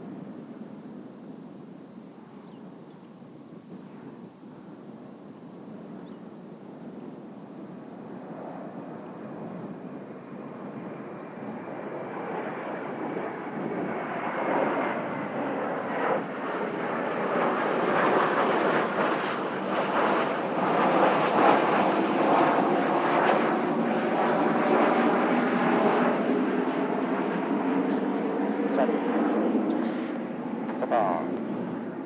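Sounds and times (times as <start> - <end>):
faint high whine: 0.0 - 32.0
jet aircraft roar: 7.0 - 32.0.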